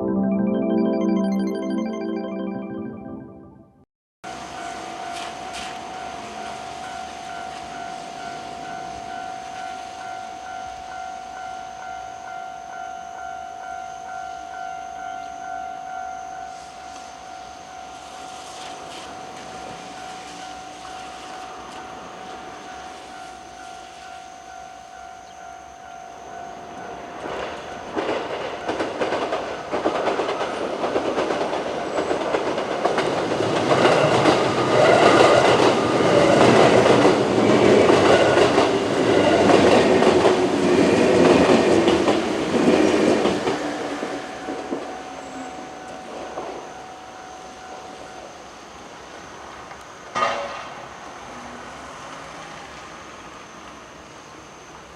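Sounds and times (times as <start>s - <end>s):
level crossing bell ringing: 0.0s - 3.8s
train wheel and rail noise: 4.3s - 54.9s.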